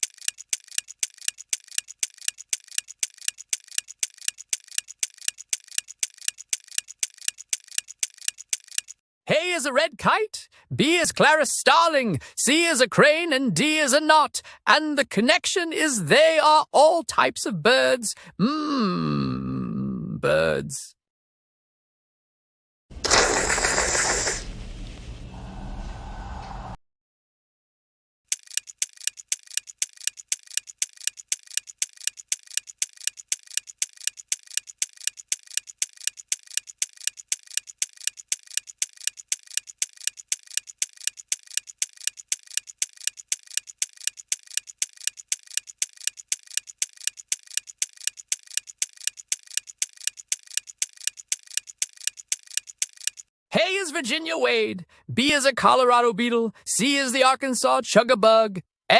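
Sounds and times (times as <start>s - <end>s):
clock ticking: 0.0s - 9.0s, 28.3s - 53.3s.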